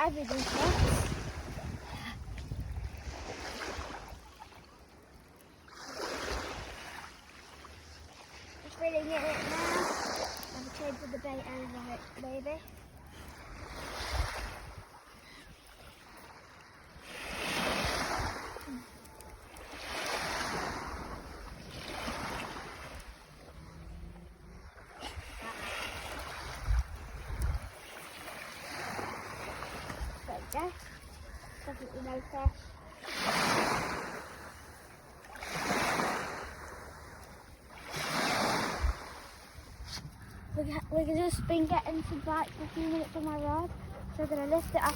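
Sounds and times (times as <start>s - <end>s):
sea waves washing onto shore: 0.0s - 2.3s, 5.7s - 12.6s, 16.0s - 23.6s, 24.8s - 40.0s.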